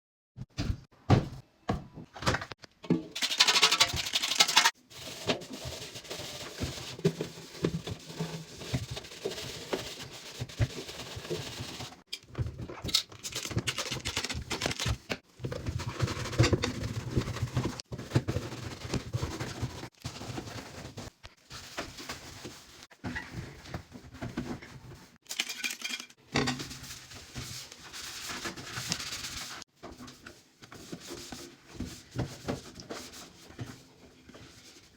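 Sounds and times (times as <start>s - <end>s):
rubbing and scrubbing: 3.2s - 12.1s, 13.5s - 25.2s.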